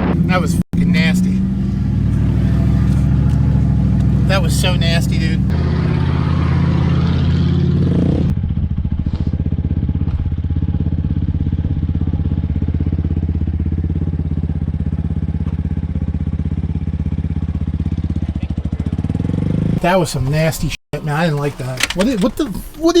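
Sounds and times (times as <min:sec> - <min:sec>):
pickup engine idling: 0:00.0 - 0:05.5, 0:19.8 - 0:23.0.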